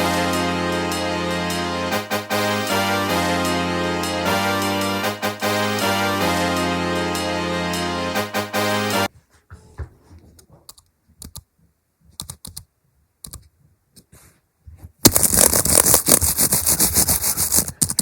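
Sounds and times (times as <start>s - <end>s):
keyboard typing: 12.2s - 13.4s.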